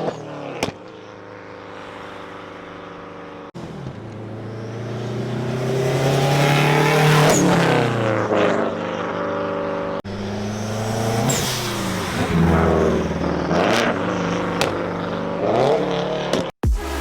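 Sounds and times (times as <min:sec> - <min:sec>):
car engine revving and passing: 0:00.0 - 0:16.5.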